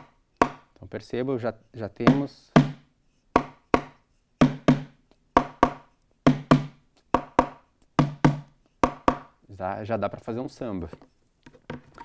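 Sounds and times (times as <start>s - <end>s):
drumstick hitting plastic bucket: 0.0s - 0.7s, 2.1s - 2.8s, 3.4s - 9.3s.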